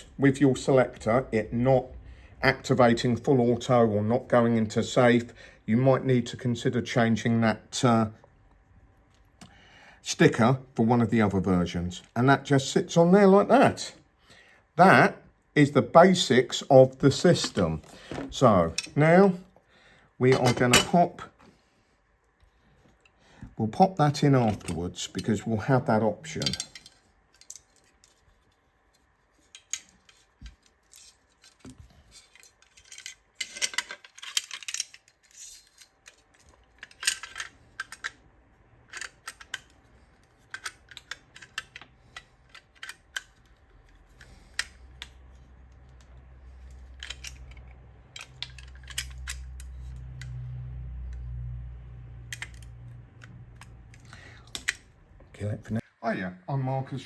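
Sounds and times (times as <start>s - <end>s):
low steady hum: 0.0s - 57.0s
light clicks of plastic and metal parts: 22.8s - 25.4s, 26.3s - 55.3s.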